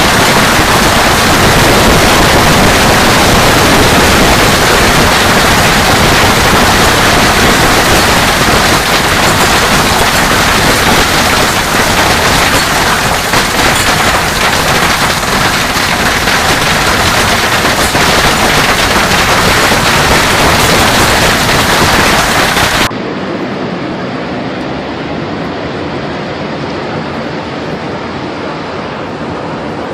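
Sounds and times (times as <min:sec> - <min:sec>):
heavy rain pounding a surface: 0:00.0 - 0:22.9
dull rushing noise: 0:00.0 - 0:29.9.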